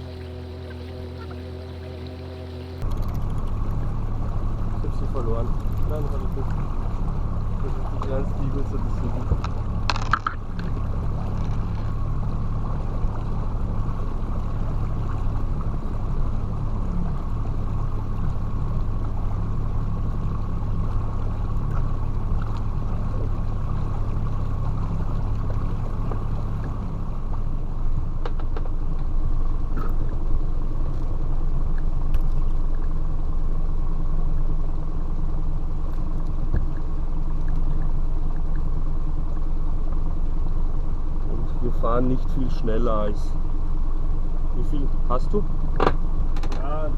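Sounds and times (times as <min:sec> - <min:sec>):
motorboat engine droning: 0:00.0 - 0:46.9.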